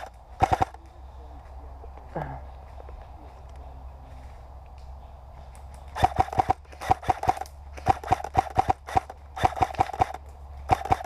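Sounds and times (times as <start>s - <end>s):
airsoft rifle firing bursts: 0.0s - 0.8s, 5.9s - 11.0s.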